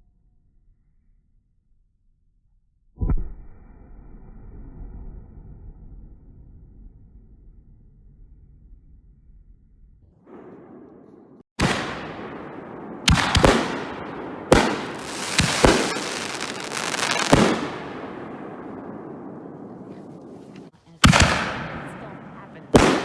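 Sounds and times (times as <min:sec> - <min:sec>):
fireworks bangs: 0:10.3 - 0:23.0
fireworks hissing: 0:14.5 - 0:18.1.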